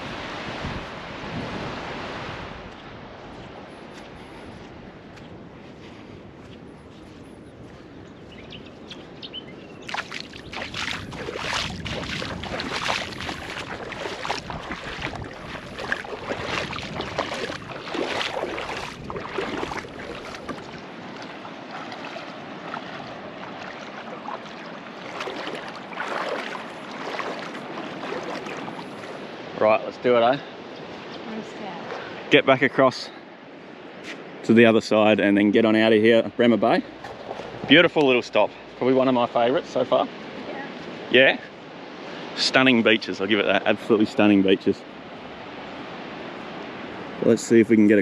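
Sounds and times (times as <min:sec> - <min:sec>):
water splashing and sloshing: 0:09.7 - 0:29.8, 0:36.6 - 0:47.3.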